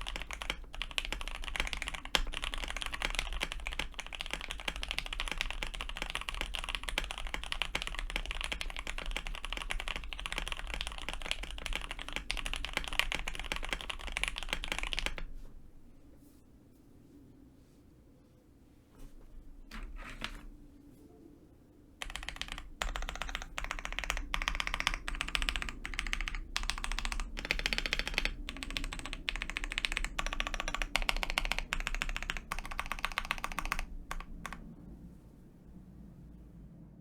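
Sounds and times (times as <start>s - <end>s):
fast typing on mechanical keyboard: 0.0s - 15.3s, 19.8s - 20.5s, 22.0s - 34.7s.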